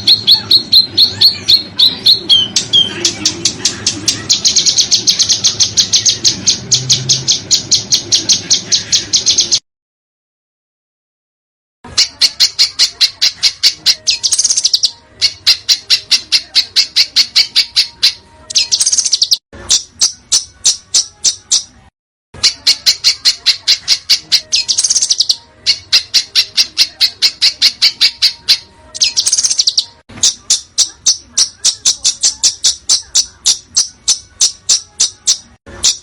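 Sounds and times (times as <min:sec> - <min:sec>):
harsh scratchy bird call: 0:22.4 - 0:36.0.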